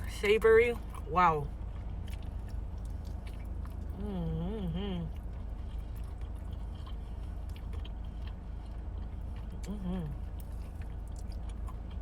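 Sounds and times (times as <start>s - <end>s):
air conditioning hum: 0.0s - 12.0s
chewing and biting: 0.8s - 12.0s
person humming: 4.0s - 5.1s.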